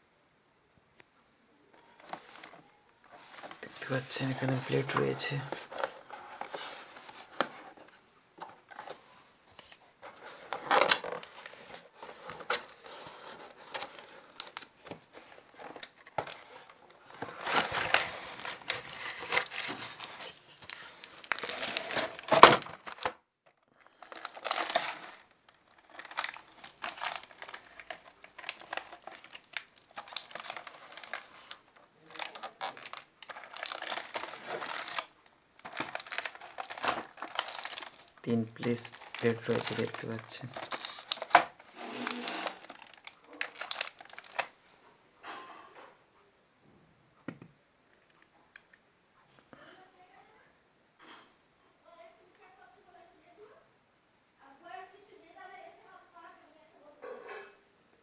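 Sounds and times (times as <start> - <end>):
packaging crinkling and tearing: 1.8 - 9.0, 9.6 - 44.6.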